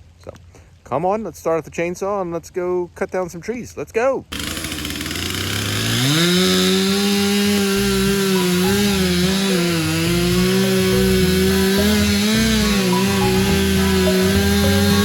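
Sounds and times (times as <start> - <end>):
chainsaw cutting wood: 4.3 - 15.0.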